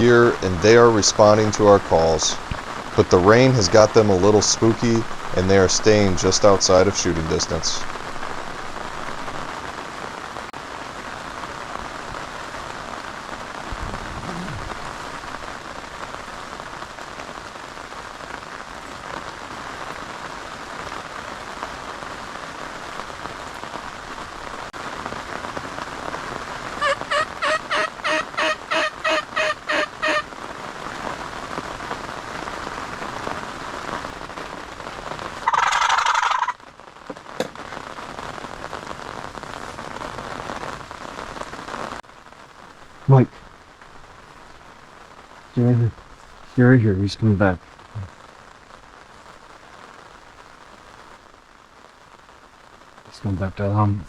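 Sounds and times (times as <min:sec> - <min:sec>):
steady rain: 0:00.0 - 0:54.0
turkey gobble: 0:26.8 - 0:30.2, 0:35.4 - 0:36.6
turkey yelps: 0:26.8 - 0:30.2, 0:35.4 - 0:36.6.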